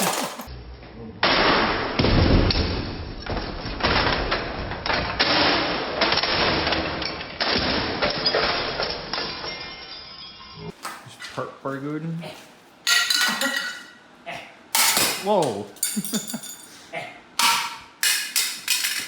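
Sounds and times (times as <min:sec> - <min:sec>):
ceiling fan clattering and banging: 0:12.8 - 0:14.0, 0:14.7 - 0:16.8, 0:17.4 - 0:19.0.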